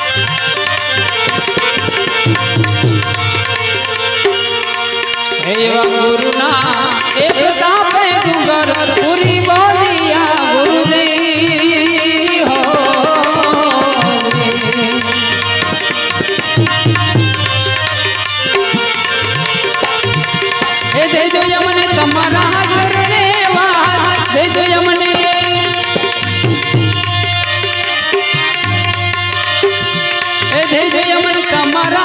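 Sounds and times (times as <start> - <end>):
tabla beat: 0.0 - 32.0.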